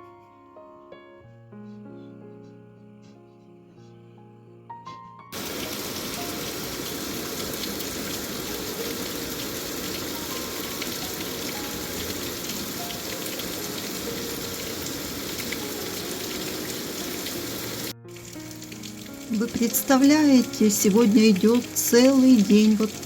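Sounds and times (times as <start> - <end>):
heavy rain falling: 5.4 - 23.0.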